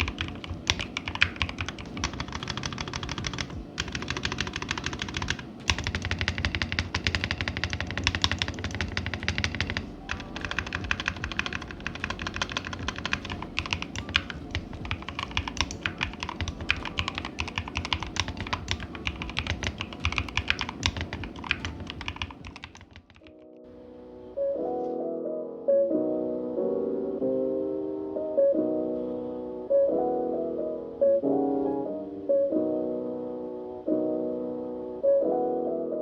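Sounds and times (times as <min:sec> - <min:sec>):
fast typing on mechanical keyboard: 0:00.0 - 0:23.4
piano music: 0:00.0 - 0:36.0.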